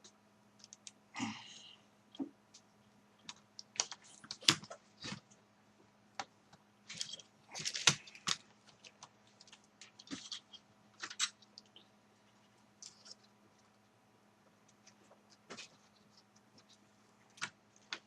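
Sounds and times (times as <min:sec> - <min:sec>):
plastic laptop parts clicking: 0:06.9 - 0:11.8.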